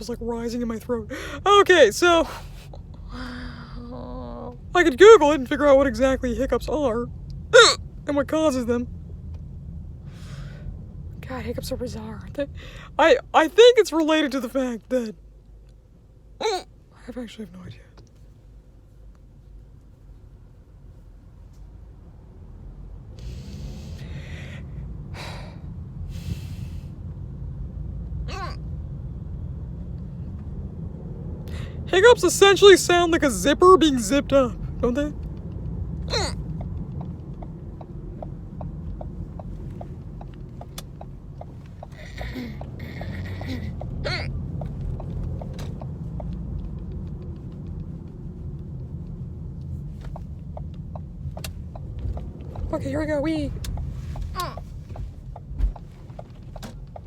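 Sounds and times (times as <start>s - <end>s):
steady low rumble: 0.0s - 57.0s
person hiccuping: 7.5s - 7.8s, 16.4s - 16.7s, 28.3s - 28.6s, 36.1s - 36.5s, 41.8s - 44.4s
sharp breaths: 10.1s - 10.8s, 23.2s - 27.0s
faint ticks: 36.6s - 52.7s.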